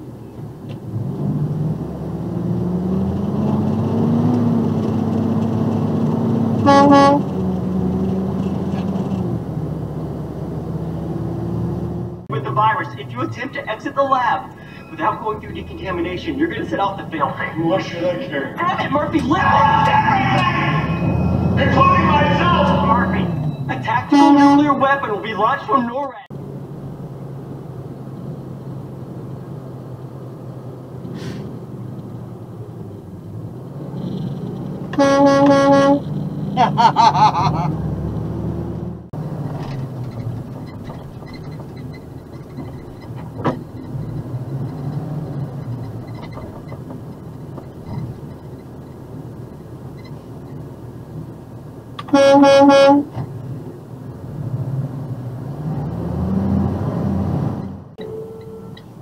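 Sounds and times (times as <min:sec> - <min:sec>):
truck engine drone: 0:00.0 - 0:59.0
truck air horn blasts: 0:06.6 - 0:07.4, 0:24.1 - 0:24.8, 0:34.9 - 0:36.1, 0:52.0 - 0:53.2, 0:58.0 - 0:58.9
wavering high-pitched sound: 0:19.7 - 0:23.7.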